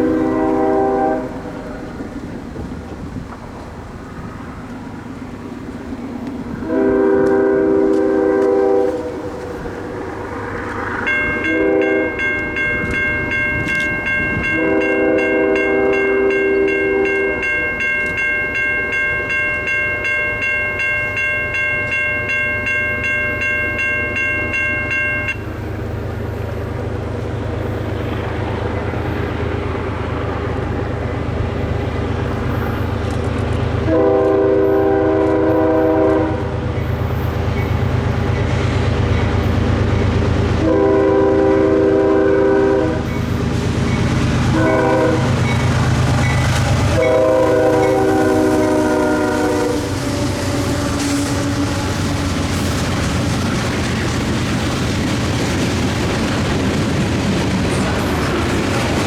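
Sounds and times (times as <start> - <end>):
locomotive air horn blasts: 0.0 - 1.6, 6.6 - 9.6, 11.4 - 12.6, 14.4 - 17.6, 33.8 - 36.6, 40.6 - 43.1, 44.5 - 45.5, 46.9 - 52.2
train rumble: 0.0 - 59.0
locomotive bell ringing: 10.7 - 26.1, 33.9 - 40.1, 40.7 - 52.2.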